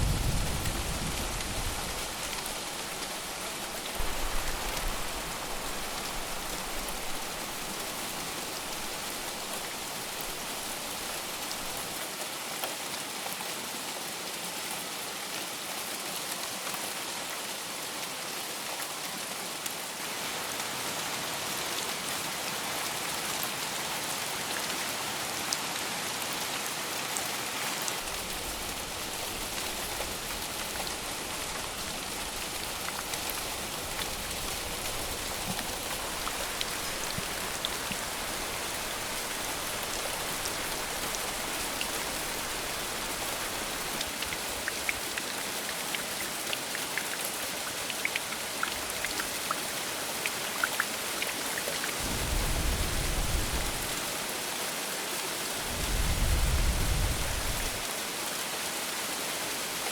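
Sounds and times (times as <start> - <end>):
heavy rain falling: 0.0 - 59.8
water drips: 32.4 - 52.0.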